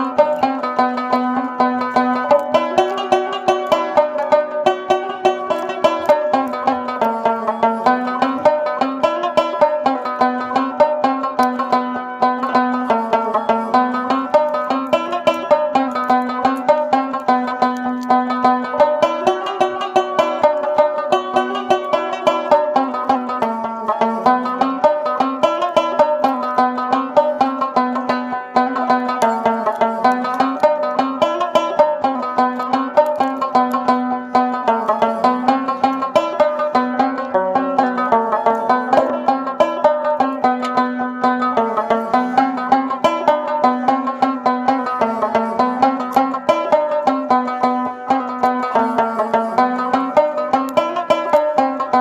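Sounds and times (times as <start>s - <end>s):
plucked string tune: 0.0s - 52.0s.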